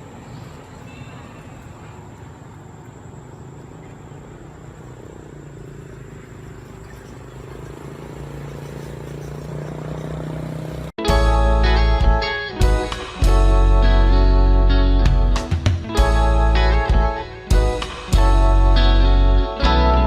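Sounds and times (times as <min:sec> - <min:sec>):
outdoor background noise: 0:00.0 - 0:19.8
vehicle engine running: 0:03.2 - 0:11.7
guitar music: 0:11.0 - 0:20.0.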